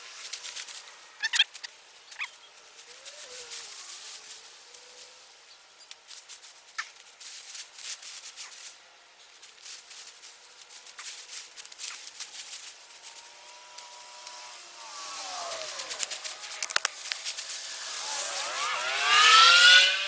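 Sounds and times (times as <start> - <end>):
digging through soil: 14.9 - 17.6.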